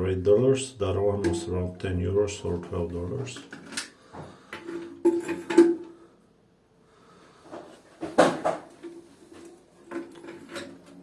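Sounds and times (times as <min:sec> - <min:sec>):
plastic parts knocking and rattling: 0:03.2 - 0:05.9, 0:08.0 - 0:11.0.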